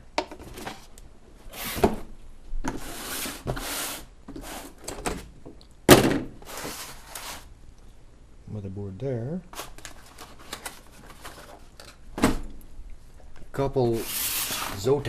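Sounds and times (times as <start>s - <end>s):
cardboard packaging rustling: 9.6s - 12.0s.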